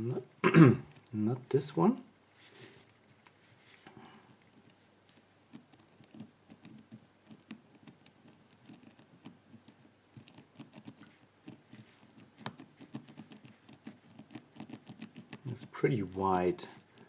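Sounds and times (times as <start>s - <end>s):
padlock wheels clicking: 4.1s - 17.0s
padlock shackle rattling: 4.2s - 17.0s.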